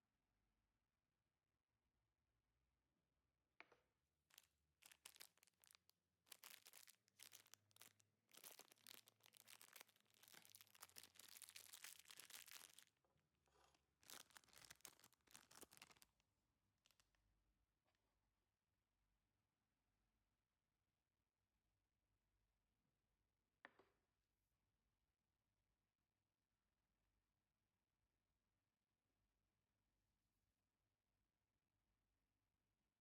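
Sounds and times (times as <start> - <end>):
plastic wrapper crinkling: 4.2 - 16.2, 16.8 - 17.2.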